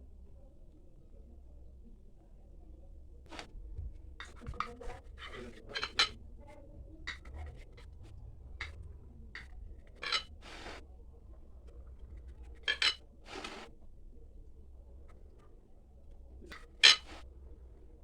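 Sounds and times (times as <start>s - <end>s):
utensils scraping and tapping dish: 4.2s - 6.2s, 9.4s - 10.8s, 12.6s - 13.7s, 16.5s - 17.2s.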